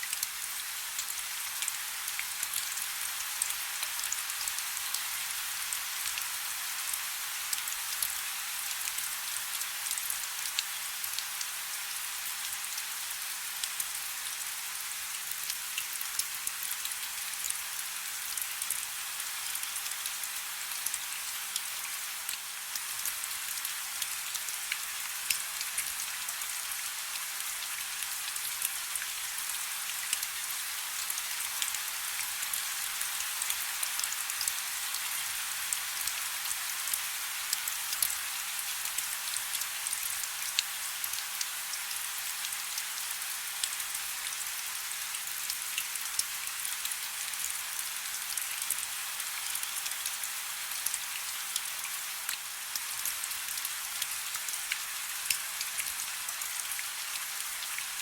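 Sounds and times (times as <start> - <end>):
soft rain falling: 0.0 - 58.0.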